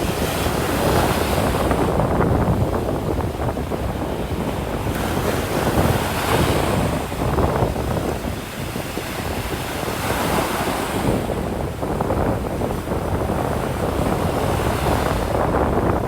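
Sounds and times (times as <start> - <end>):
ocean surf breaking: 0.0 - 11.8
wind buffeting microphone: 0.0 - 16.0.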